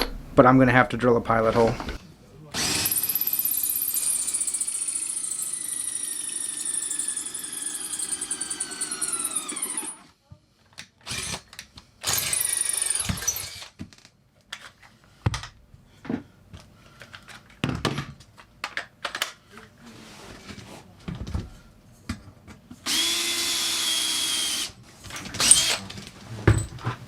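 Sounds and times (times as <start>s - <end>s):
power drill drilling into steel: 2.6s - 10.1s, 12.0s - 13.7s, 22.9s - 24.7s, 25.4s - 25.9s.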